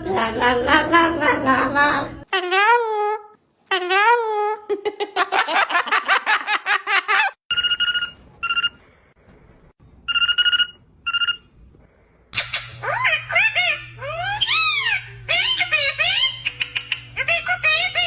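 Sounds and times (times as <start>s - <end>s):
low hum: 11.6s - 18.0s
parrot chattering and whistling: 12.4s - 18.0s.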